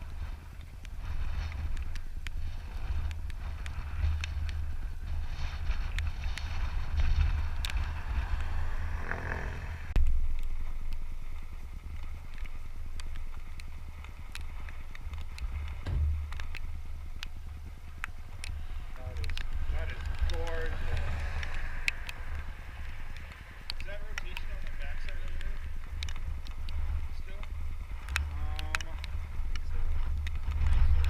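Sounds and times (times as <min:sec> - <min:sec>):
wind buffeting microphone: 0:00.0 - 0:31.0
sharp ticks: 0:11.8 - 0:31.0.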